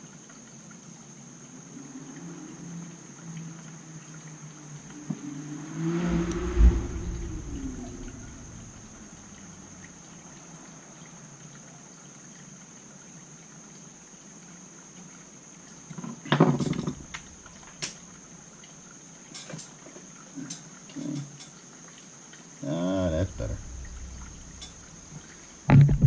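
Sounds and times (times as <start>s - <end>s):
faint high-pitched whine: 5.1s - 10.2s, 22.7s - 26.0s.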